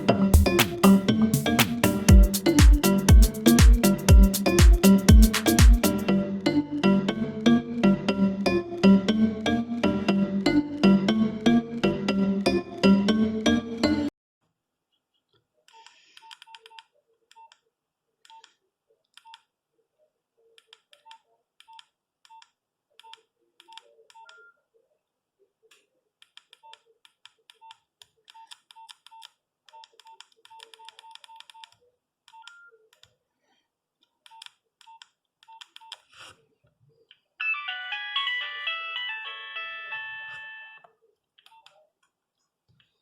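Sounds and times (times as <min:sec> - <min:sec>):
polyphonic ringtone: 0:00.0 - 0:14.1, 0:37.4 - 0:40.8.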